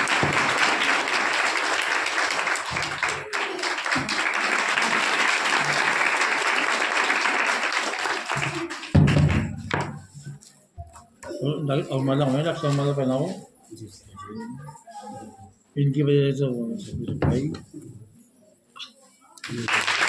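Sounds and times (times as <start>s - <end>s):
audience applauding: 0.0s - 9.1s, 19.4s - 20.0s.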